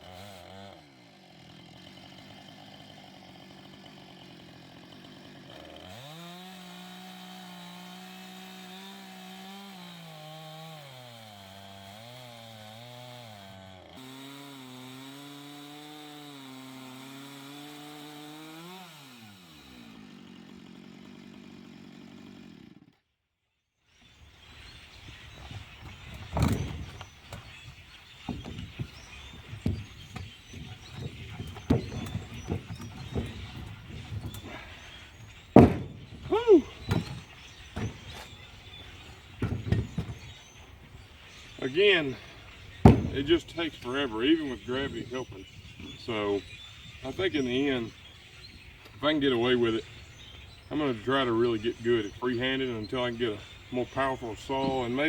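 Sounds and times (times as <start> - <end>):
chainsaw cutting log: 0.0 - 23.1, 24.0 - 55.0
rustling: 24.4 - 49.0
sharp knocks: 24.5 - 46.0.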